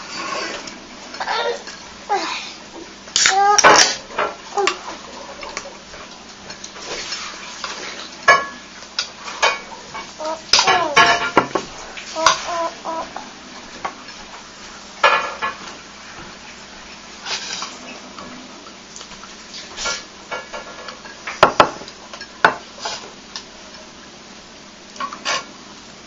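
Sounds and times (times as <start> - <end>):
cutlery and dishes clinking: 6.5 - 12.4.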